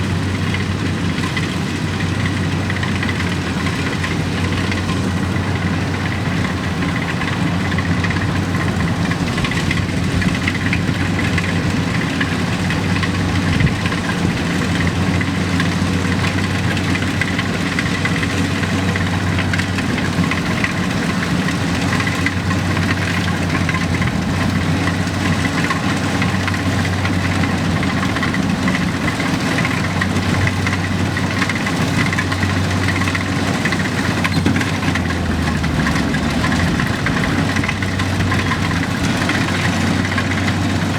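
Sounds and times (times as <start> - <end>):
engine running steadily: 0.0 - 40.9.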